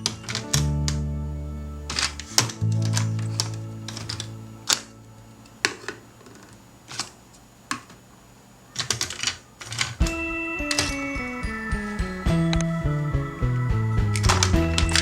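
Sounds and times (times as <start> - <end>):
simple stepping music tune: 0.0 - 5.6, 10.0 - 15.0
sharp clicks: 8.7 - 11.3, 13.6 - 15.0.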